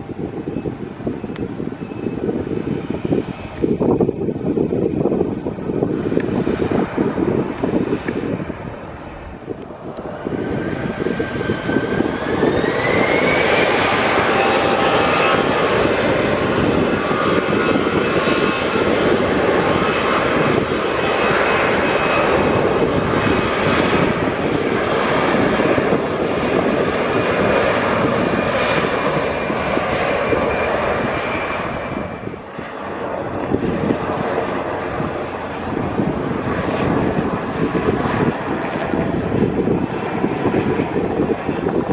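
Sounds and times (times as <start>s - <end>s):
jet engines spooling up: 0.0s - 41.9s.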